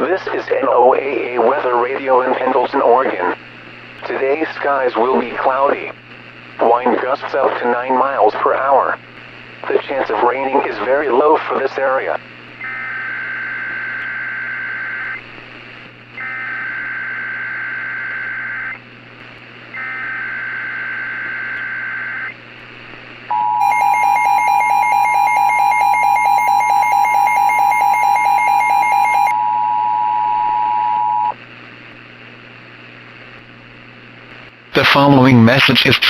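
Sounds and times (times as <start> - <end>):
two-tone attention signal: 23.3 - 31.3.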